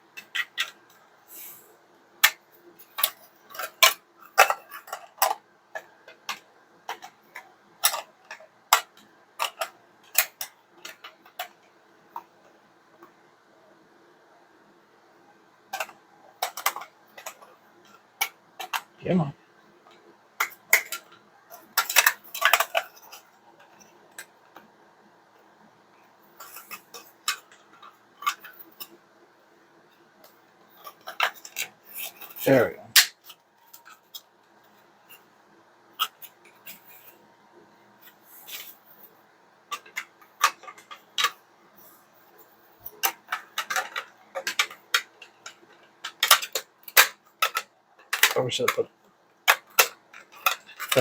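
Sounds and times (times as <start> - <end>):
plastic toy pieces clicking: 0.2 - 0.9, 2.2 - 11.6, 15.7 - 18.9, 20.4 - 24.7, 39.7 - 41.4, 42.8 - 48.8, 49.5 - 51.0.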